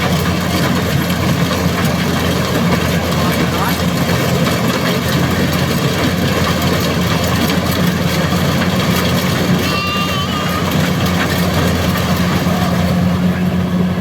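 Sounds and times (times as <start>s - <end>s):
harvesting machine engine running: 0.0s - 14.0s
thin wavering high tone: 9.6s - 12.7s.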